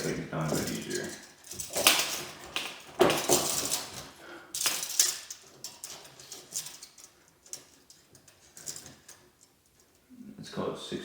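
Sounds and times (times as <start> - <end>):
metal door hinges clinking: 0.0 - 9.2.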